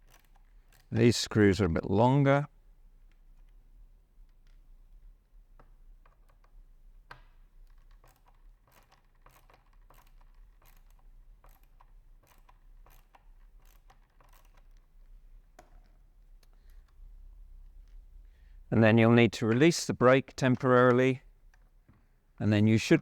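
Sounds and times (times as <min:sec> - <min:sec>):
screwdriver clicking and scraping: 0:07.7 - 0:15.0.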